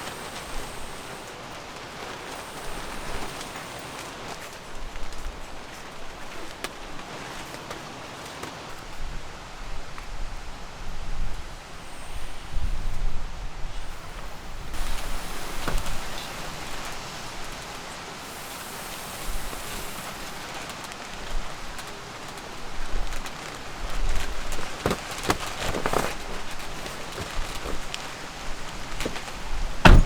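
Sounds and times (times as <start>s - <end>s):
sharp clicks and knocks: 29.0s - 30.0s.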